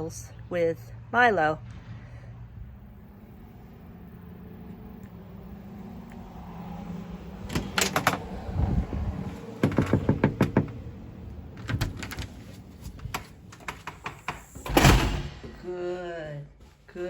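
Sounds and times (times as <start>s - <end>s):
knuckles knocking on a door: 9.6s - 10.8s.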